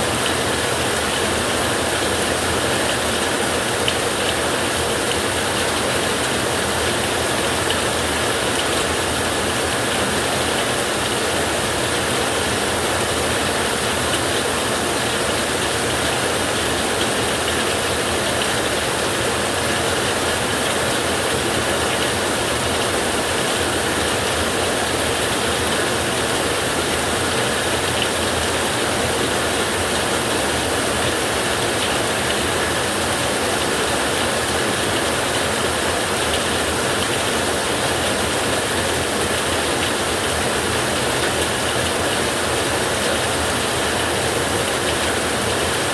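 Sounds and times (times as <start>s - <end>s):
heavy rain on a tin roof: 0.0s - 45.9s.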